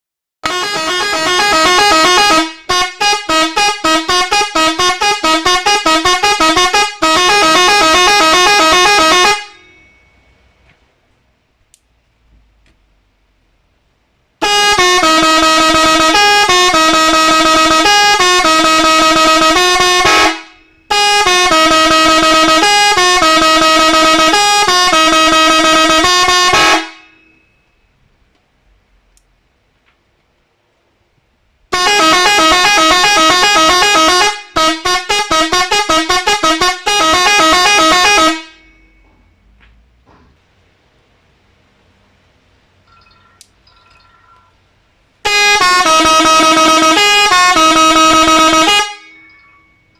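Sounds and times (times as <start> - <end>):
musical car horn melody: 0.4 - 10.6, 14.4 - 28.0, 31.7 - 39.6, 45.2 - 49.9.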